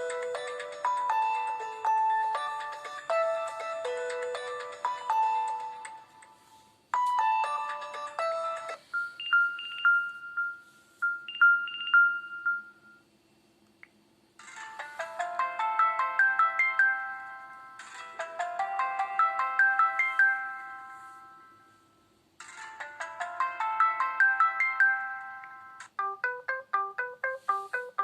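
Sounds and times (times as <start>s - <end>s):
synthetic ringtone melody: 0.0s - 13.0s, 14.4s - 21.8s, 22.5s - 28.0s.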